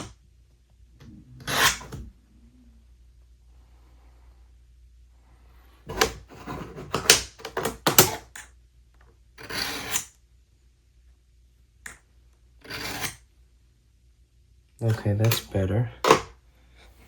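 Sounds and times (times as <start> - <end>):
metal cutter scraping on sharpening stone: 1.4 - 2.0, 9.4 - 10.1, 12.6 - 13.2.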